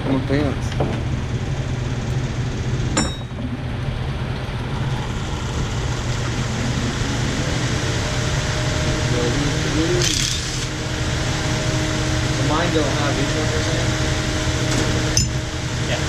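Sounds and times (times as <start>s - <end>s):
fan whirring: 0.0s - 16.0s
metal clink: 3.0s - 3.4s.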